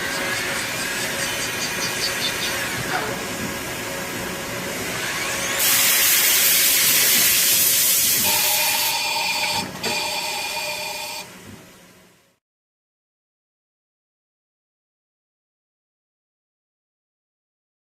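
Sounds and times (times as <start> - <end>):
lathe mechanical hum: 0.0 - 12.4
loud hiss: 4.9 - 9.0.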